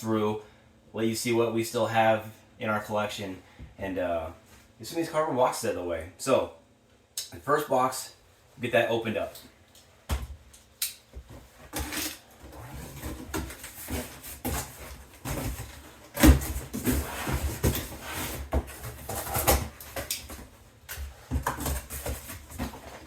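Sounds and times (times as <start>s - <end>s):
cardboard rustling and scraping: 11.3s - 23.0s.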